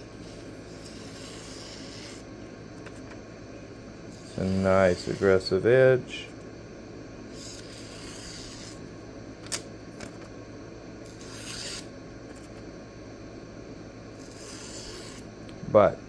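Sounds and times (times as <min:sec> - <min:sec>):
knife blade rubbing on sharpener: 0:00.1 - 0:02.3, 0:04.1 - 0:05.5, 0:07.3 - 0:08.8, 0:11.0 - 0:12.6, 0:14.2 - 0:15.3.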